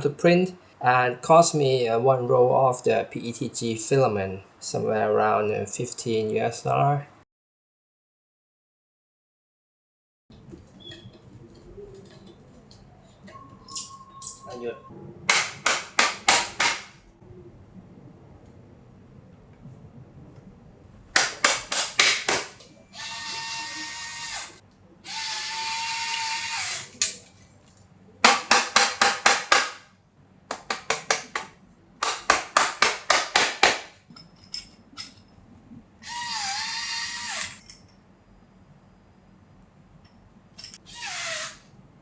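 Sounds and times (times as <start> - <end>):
cordless drill whirring: 22.9 - 27.0, 36.0 - 37.6, 40.9 - 41.7.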